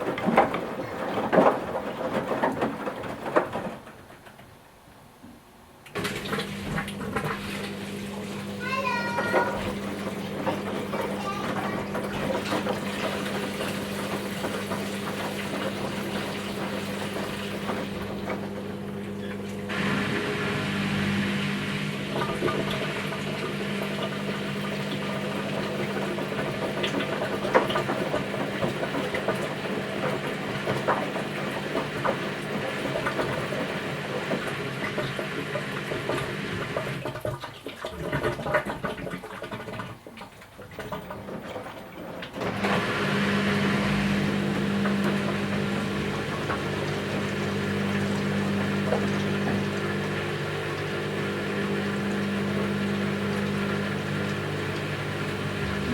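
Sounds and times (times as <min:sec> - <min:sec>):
washing machine motor hum: 0:00.0 - 0:55.9
water sloshing: 0:06.0 - 0:33.4.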